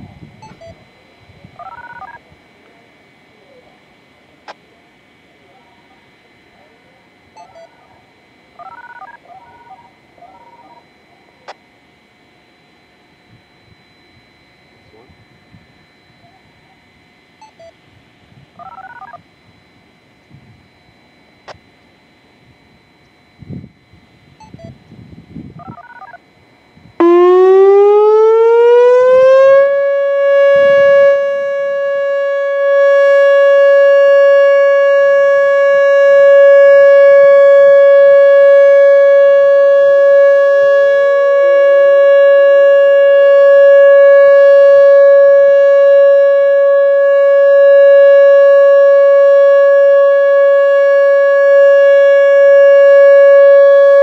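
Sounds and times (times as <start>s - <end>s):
electronic siren alert tone: 0.0s - 2.4s, 7.3s - 54.0s.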